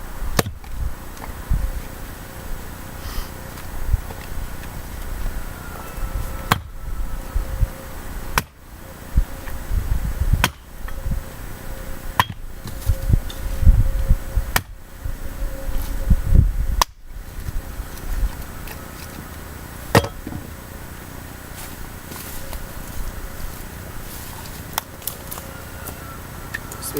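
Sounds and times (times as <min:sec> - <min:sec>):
axe striking firewood: 0:10.4 - 0:10.7, 0:19.9 - 0:20.5.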